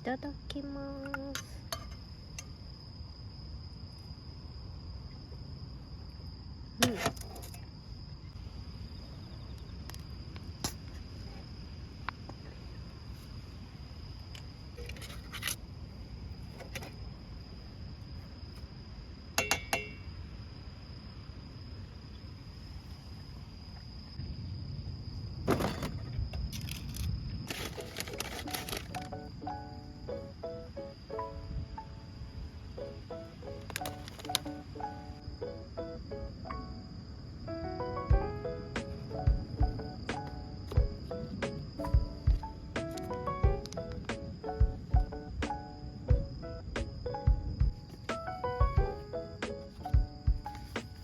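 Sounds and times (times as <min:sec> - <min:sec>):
crickets trilling: 0:00.0 - 0:51.0
low wind rumble: 0:07.7 - 0:51.0.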